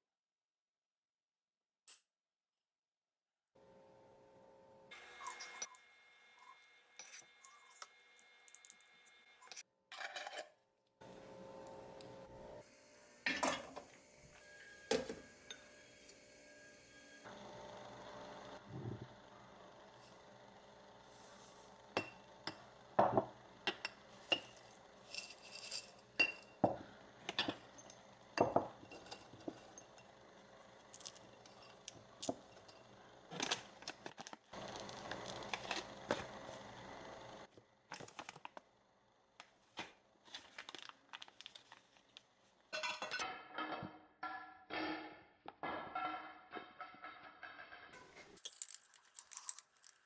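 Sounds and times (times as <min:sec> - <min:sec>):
glassware and utensils clinking: 0:22.0 - 0:30.1, 0:42.7 - 0:44.4, 0:48.4 - 0:50.0.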